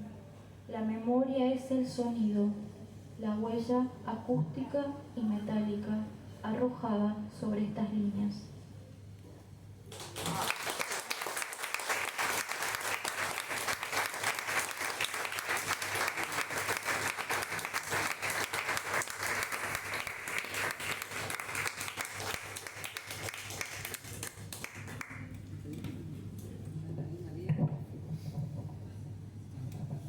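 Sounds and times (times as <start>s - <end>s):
audience clapping: 9.9s - 25.4s.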